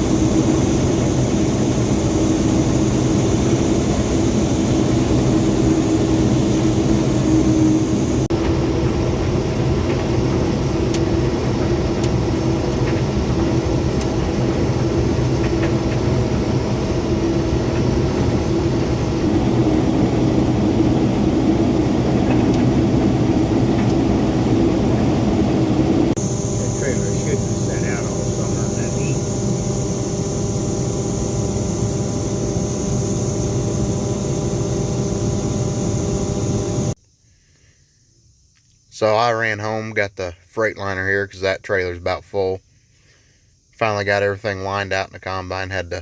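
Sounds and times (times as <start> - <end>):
diesel engine running: 0.0 - 37.0
high hiss: 26.2 - 38.2.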